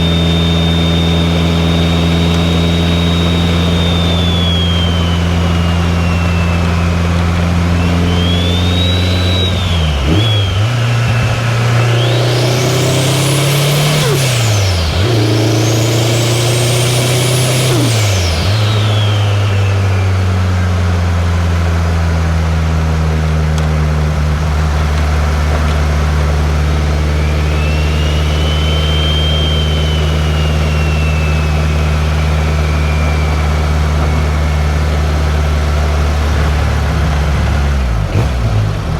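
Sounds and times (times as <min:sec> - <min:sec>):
turbo whistle: 0:00.0 - 0:20.9, 0:25.9 - 0:36.5
car engine revving while driving: 0:00.0 - 0:38.9.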